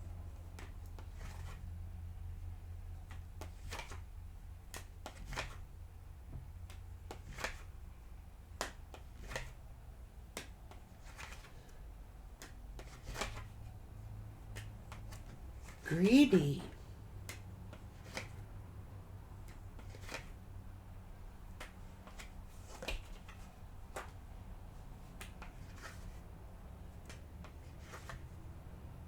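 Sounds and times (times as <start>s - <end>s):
cards clicking and snapping: 3.0s - 4.0s, 4.6s - 5.6s, 6.3s - 7.8s, 8.5s - 9.6s, 10.2s - 13.7s, 14.4s - 15.8s, 17.2s - 18.4s, 19.4s - 20.4s, 21.5s - 24.2s, 25.0s - 26.2s, 26.9s - 28.3s.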